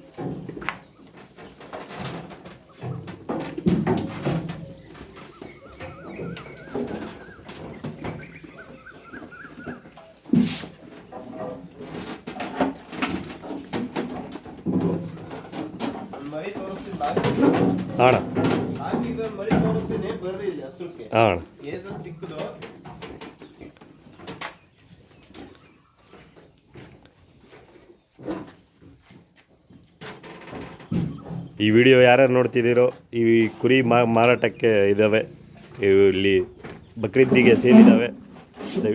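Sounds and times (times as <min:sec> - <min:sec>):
small birds chirping: 0:00.0 - 0:11.7, 0:15.0 - 0:37.6
lower bird call: 0:04.6 - 0:10.6.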